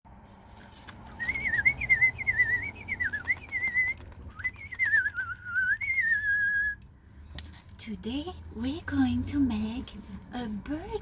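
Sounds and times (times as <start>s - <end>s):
bird-like warbling whistle: 1.2s - 6.8s.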